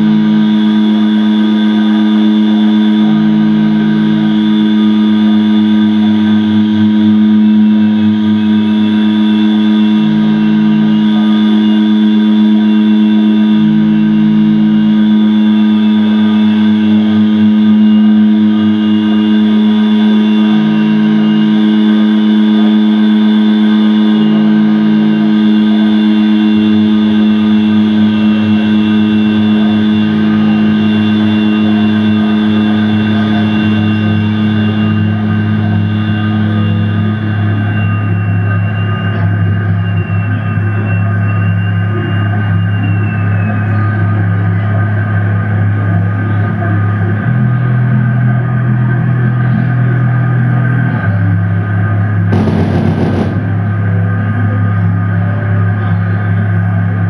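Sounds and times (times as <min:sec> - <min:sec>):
deeper tone cutting in: 0:00.0 - 0:38.2, 0:52.3 - 0:55.1
high thin tone: 0:00.0 - 0:43.8
steady low drone tone: 0:00.0 - 0:57.0.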